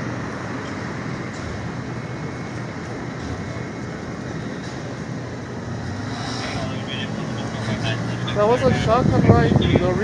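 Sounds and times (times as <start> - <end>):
rumble of vehicle noise: 0.0 - 10.0.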